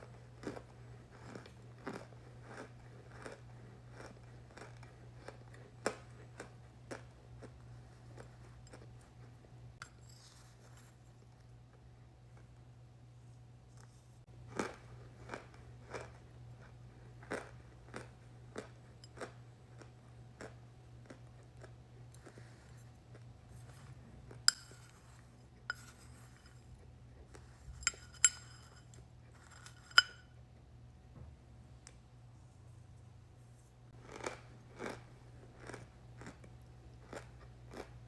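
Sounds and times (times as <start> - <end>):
cornstarch chunks crunching when chewed: 0.0 - 9.2, 14.4 - 25.1, 34.0 - 38.0.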